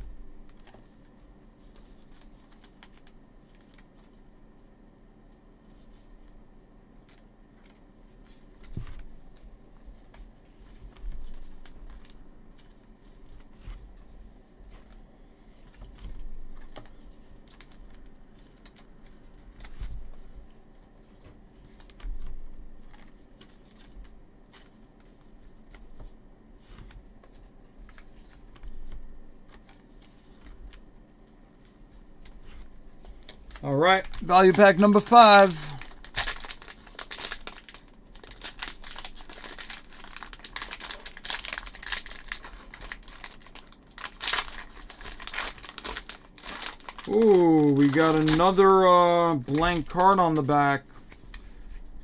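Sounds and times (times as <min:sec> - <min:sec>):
plastic wrapper crinkling: 0:32.2 - 0:52.0.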